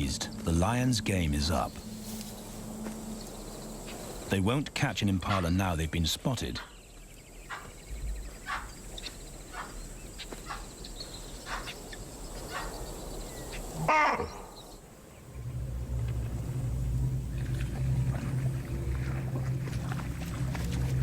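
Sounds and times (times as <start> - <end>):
low steady drone: 0.0 - 4.8, 15.0 - 21.0
animal alarm calls: 7.5 - 7.8, 8.4 - 10.8, 11.4 - 12.8.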